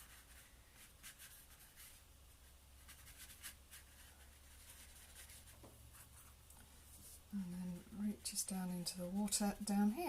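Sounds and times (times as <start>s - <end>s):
paintbrush scratching on canvas: 0.0s - 2.0s, 2.8s - 7.2s
low steady hum: 0.0s - 10.0s.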